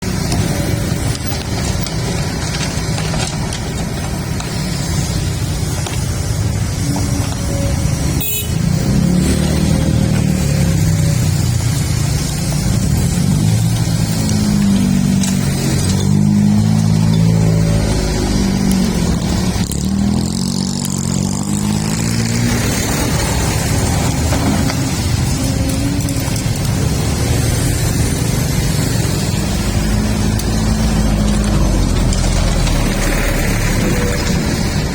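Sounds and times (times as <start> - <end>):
diesel engine rumbling: 0.0 - 34.9.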